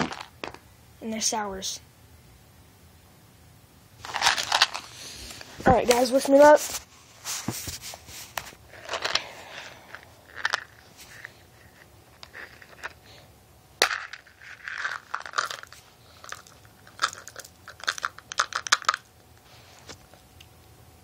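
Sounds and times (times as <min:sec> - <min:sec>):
hard mints clicking and rattling: 0:04.0 - 0:06.5, 0:08.7 - 0:13.0, 0:13.8 - 0:19.1
short rustles: 0:04.0 - 0:11.8.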